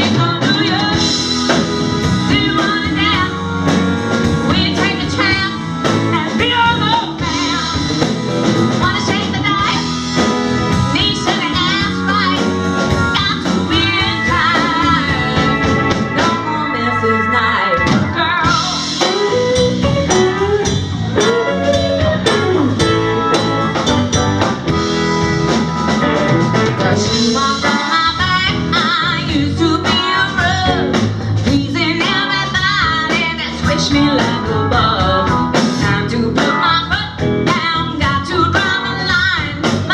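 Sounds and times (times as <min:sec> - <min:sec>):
live band playing blues: 0:00.0 - 0:39.9
person singing: 0:13.2 - 0:19.7, 0:26.7 - 0:39.9.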